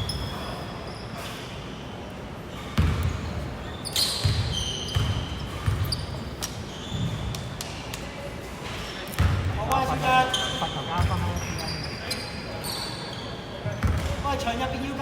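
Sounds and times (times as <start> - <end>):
sneakers squeaking on floor: 0.0 - 14.4
basketball bouncing on hardwood: 2.8 - 3.1, 4.2 - 6.0, 13.8 - 14.2.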